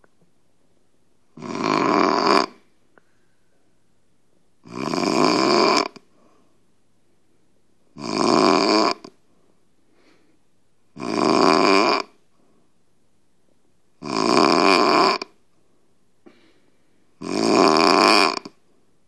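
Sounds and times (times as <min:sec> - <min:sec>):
man snoring loudly: 0:01.4 - 0:02.6, 0:04.6 - 0:06.0, 0:08.0 - 0:09.1, 0:11.0 - 0:12.1, 0:14.0 - 0:15.3, 0:17.2 - 0:18.5.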